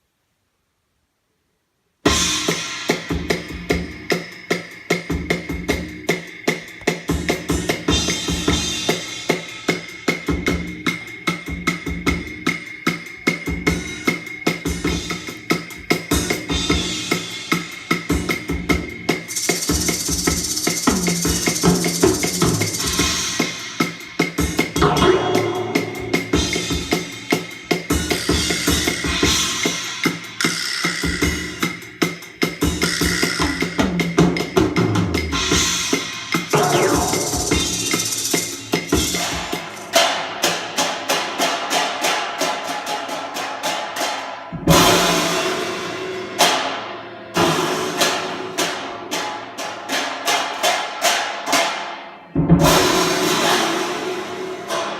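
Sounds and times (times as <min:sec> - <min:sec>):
music over speakers: 0:02.1 - 0:41.7.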